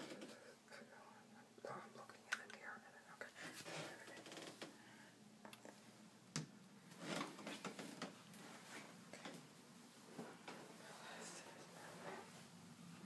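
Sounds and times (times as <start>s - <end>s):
clothing rustling: 6.9s - 13.0s.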